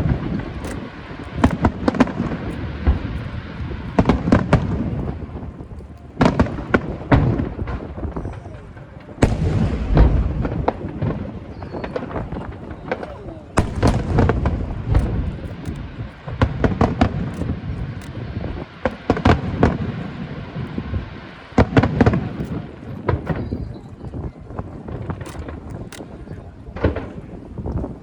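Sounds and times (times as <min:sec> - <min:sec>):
fireworks booming and popping: 0:00.0 - 0:28.0.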